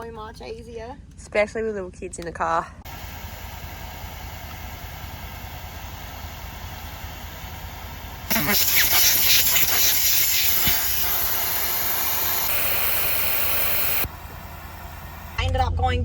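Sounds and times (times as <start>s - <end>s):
air hissing out of tyre: 8.2s - 12.5s.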